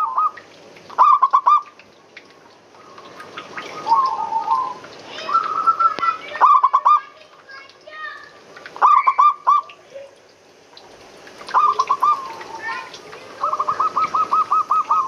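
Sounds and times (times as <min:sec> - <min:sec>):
dove cooing: 0:02.8 - 0:07.0, 0:11.5 - 0:15.0.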